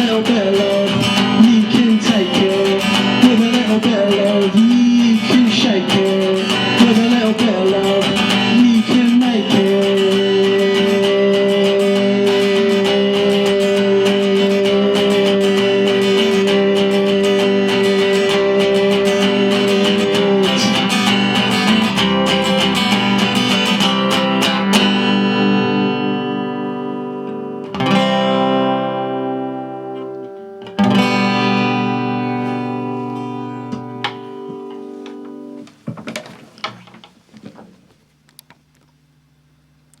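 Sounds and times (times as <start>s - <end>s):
guitar chords ringing: 0.0s - 35.8s
acoustic guitar strumming: 0.0s - 38.0s
soft guitar clicks: 27.2s - 28.0s, 29.9s - 31.0s, 32.4s - 39.0s.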